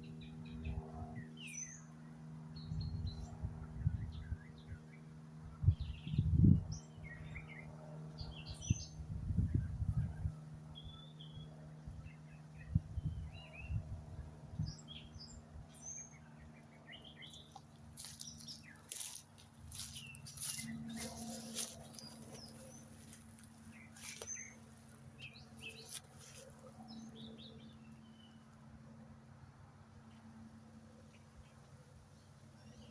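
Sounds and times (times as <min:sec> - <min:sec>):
steady low hum: 0:00.0 - 0:32.9
wild birds chirping: 0:14.7 - 0:28.6.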